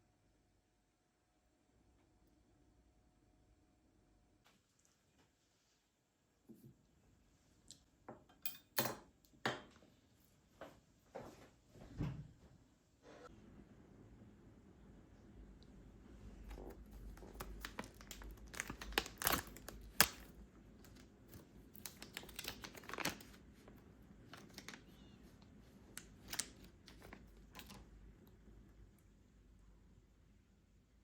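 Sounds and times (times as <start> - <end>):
crinkling and rustling: 16.2 - 28.5.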